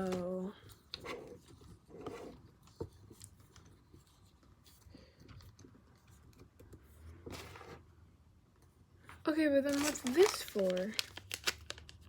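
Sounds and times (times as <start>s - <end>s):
light handling rustling: 9.6s - 11.4s.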